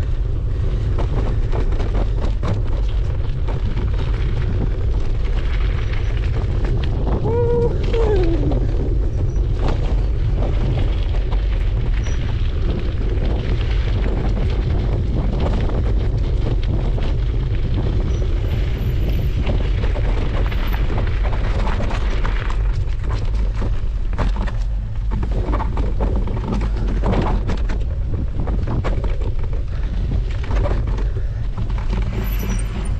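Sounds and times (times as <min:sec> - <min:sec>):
bike clicking and rattling: 0:00.0 - 0:32.9
wind rumble on microphone: 0:00.0 - 0:32.9.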